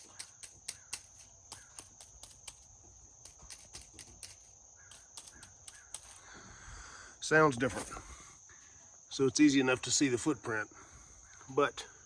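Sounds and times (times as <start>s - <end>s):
stick tapping dry leaves: 0.0s - 6.3s.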